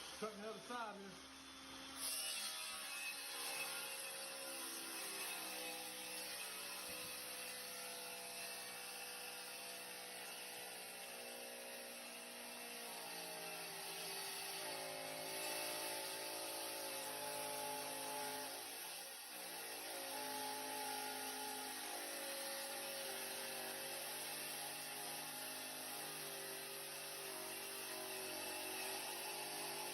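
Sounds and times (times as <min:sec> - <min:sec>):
power tool motor whining: 0:13.3 - 0:29.9.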